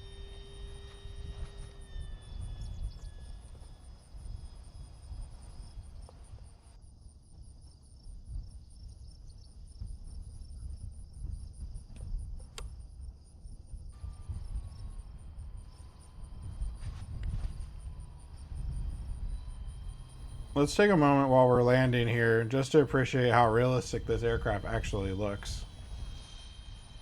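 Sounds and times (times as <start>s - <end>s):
faint falling whine: 0.0s - 6.8s, 9.8s - 27.0s
crickets chirping: 0.0s - 27.0s
low rumble: 13.9s - 27.0s.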